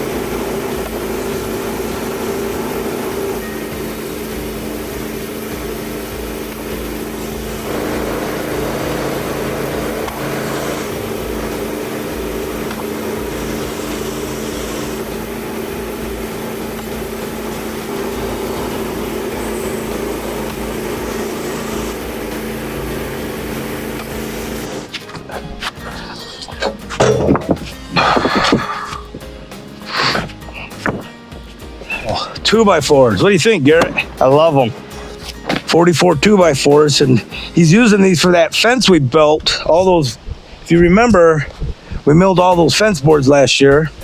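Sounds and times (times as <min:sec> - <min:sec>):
sawmill gas engine milling log: 0:00.0 - 0:29.2.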